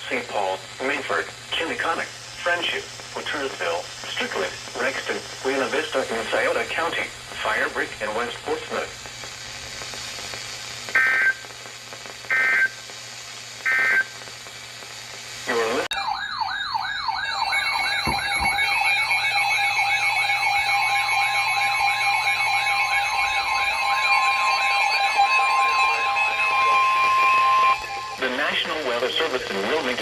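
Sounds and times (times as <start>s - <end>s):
warbling siren-like alert tone: 15.9s - 28.4s
steady tone: 15.9s - 29.2s
screeching digital data bursts: 15.9s - 30.0s.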